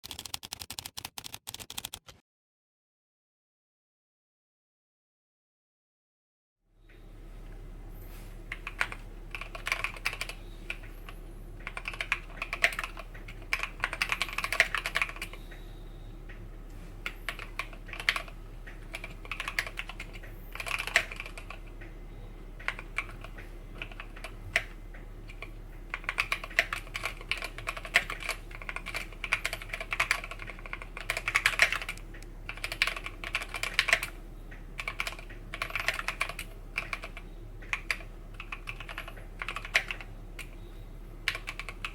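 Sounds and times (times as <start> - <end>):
mechanical keyboard typing: 0.0 - 2.2, 8.5 - 15.4, 17.0 - 21.8, 22.6 - 34.2, 34.8 - 40.6, 41.2 - 41.9.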